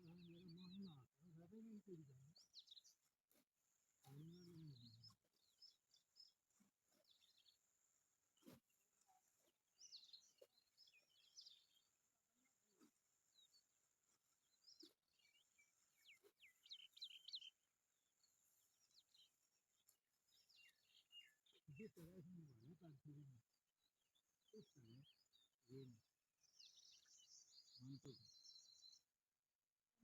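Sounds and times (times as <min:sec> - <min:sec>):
high bird chirps: 0:14.7 - 0:17.6.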